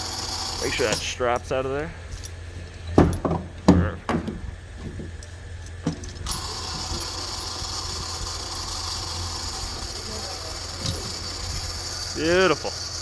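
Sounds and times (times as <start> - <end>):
machine running with bright hiss: 0.0 - 2.8, 4.6 - 13.0
metallic clanks and knocks: 2.2 - 6.4.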